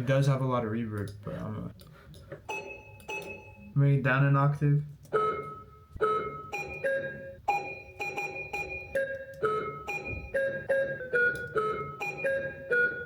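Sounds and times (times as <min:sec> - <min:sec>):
keyboard beep melody with reverb: 0:02.5 - 0:03.7, 0:05.1 - 0:13.0.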